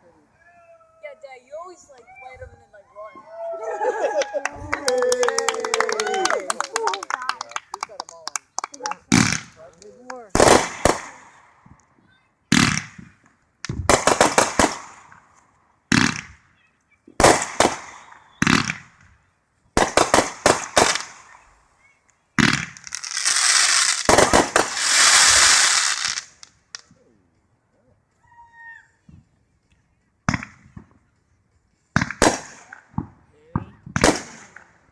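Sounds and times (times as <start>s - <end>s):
fireworks bangs: 4.5s - 11.3s, 12.5s - 15.2s, 17.2s - 19.0s, 22.4s - 26.5s, 32.0s - 34.7s
fireworks crackling hiss: 22.4s - 26.8s.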